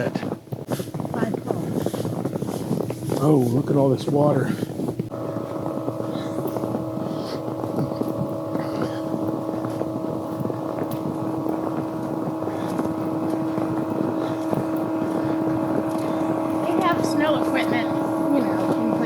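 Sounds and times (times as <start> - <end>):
vehicle engine drone: 5.0 - 19.0.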